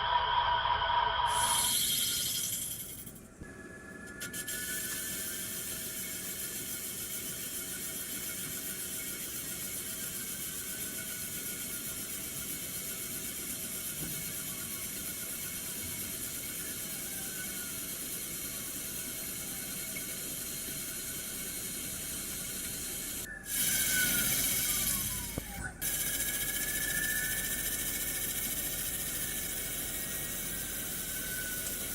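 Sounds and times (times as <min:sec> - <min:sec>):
faint falling whines: 0:00.0 - 0:06.0, 0:22.8 - 0:31.9
lathe mechanical whir and hiss: 0:00.0 - 0:31.9.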